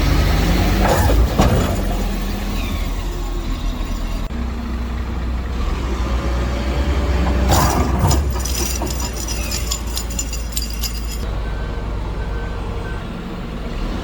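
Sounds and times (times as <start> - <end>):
diesel machinery running: 0.0 - 14.0
sharp metallic clanks: 7.5 - 11.3.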